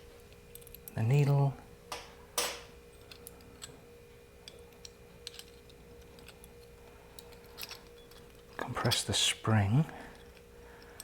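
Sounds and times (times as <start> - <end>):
faint steady hum: 0.0 - 11.0
small metal parts clicking: 3.0 - 3.8, 4.4 - 9.2.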